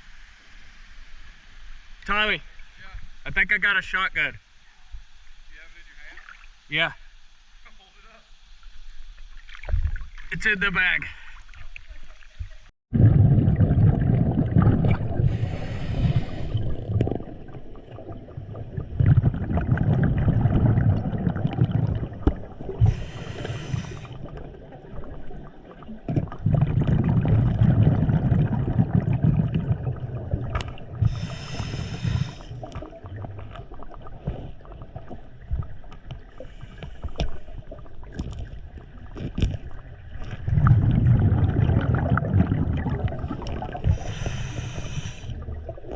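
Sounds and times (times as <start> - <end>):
exhaled bubbles rushing: 12.9 - 36.6, 37.4 - 45.9
regulator inhale hiss: 15.2 - 16.9, 22.8 - 24.2, 31.0 - 32.7, 36.3 - 37.7, 43.8 - 45.4.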